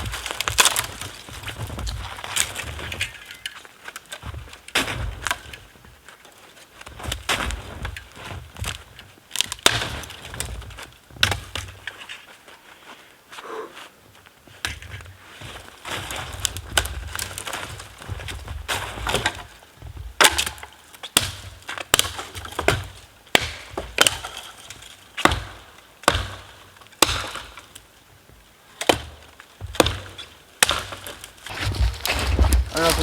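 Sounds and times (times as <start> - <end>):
firewood cracking and splintering: 0.0 - 12.3, 14.5 - 33.0
heavy thud: 31.5 - 33.0.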